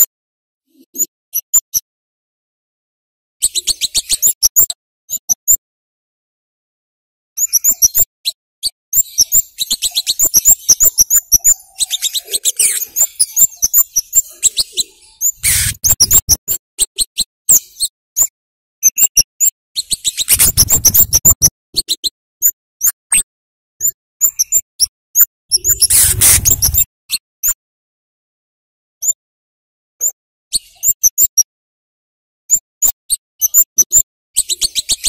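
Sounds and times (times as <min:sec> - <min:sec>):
bird chirping sharp high notes: 0:09.1 - 0:16.4
short noisy bursts: 0:15.4 - 0:16.0, 0:25.7 - 0:26.8.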